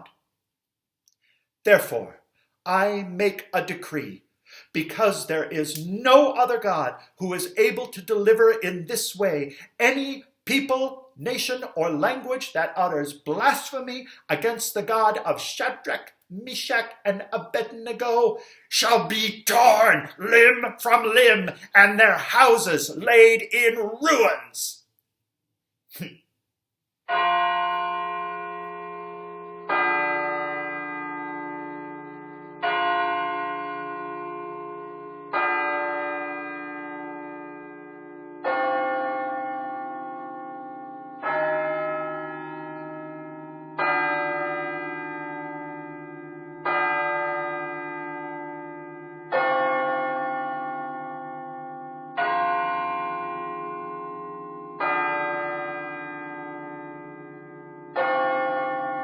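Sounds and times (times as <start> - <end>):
bells ringing: 18.8 - 24.7, 52.1 - 59.0.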